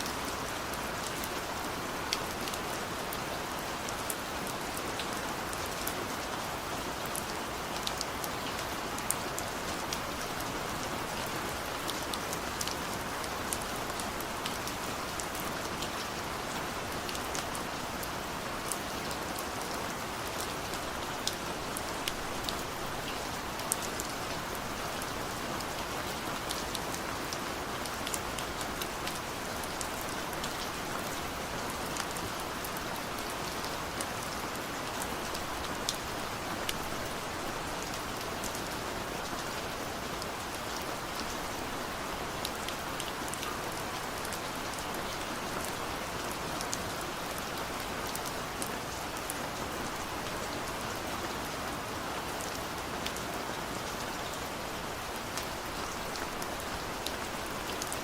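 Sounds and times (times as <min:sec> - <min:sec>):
steady rain hiss: 0:00.0 - 0:58.0.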